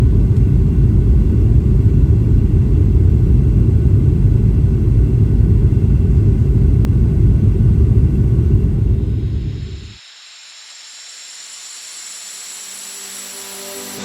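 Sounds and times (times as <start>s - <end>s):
airplane cabin rumble: 0.0s - 10.0s.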